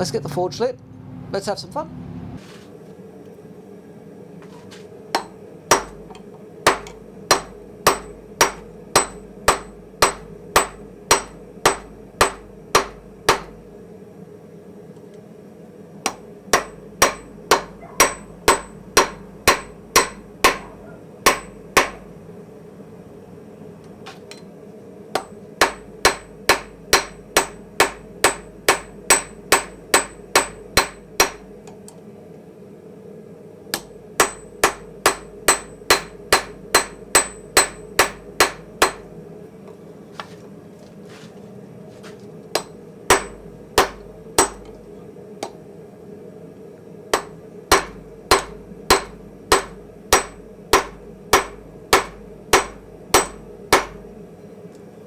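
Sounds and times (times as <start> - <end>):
hammer striking steel on anvil: 5.2 - 13.6, 16.0 - 22.1, 25.2 - 31.5, 33.7 - 39.1, 42.6 - 44.7, 47.2 - 54.1.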